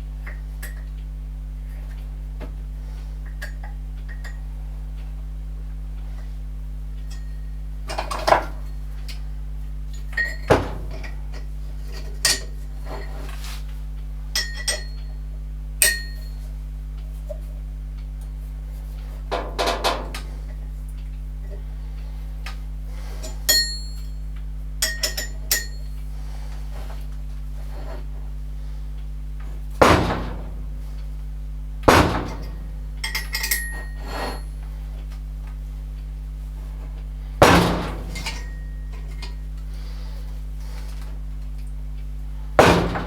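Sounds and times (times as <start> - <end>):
metal tools clinking: 32.3 - 34.5.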